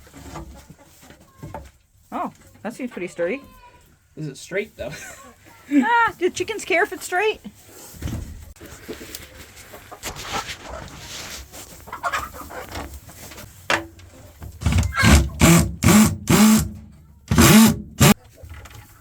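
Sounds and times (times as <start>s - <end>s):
faint rustling: 5.0s - 14.7s.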